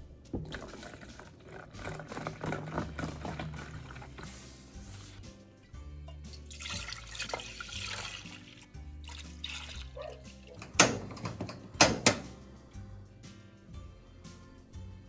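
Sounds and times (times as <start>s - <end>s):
liquid pouring: 0.3s - 4.4s, 6.1s - 11.3s
background music with bass line: 2.7s - 15.0s.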